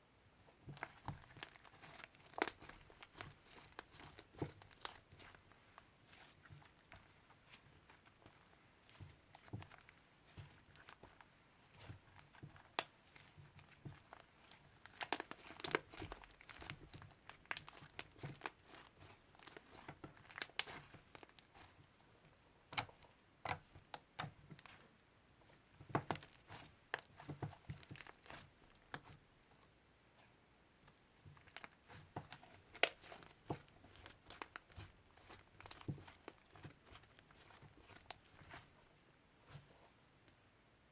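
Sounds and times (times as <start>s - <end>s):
slime squishing and popping: 0.7s - 5.5s, 6.1s - 21.7s, 25.8s - 29.1s, 31.4s - 38.6s.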